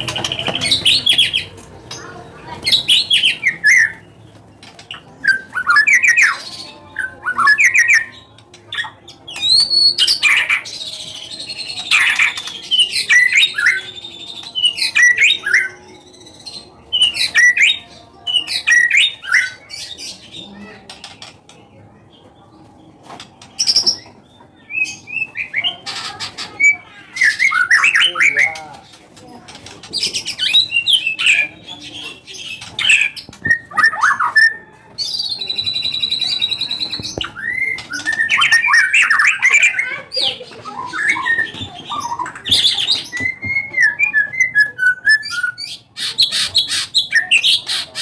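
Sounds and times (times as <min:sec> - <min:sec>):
bird singing whistled phrases: 0:32.9 - 0:39.8, 0:40.8 - 0:45.8.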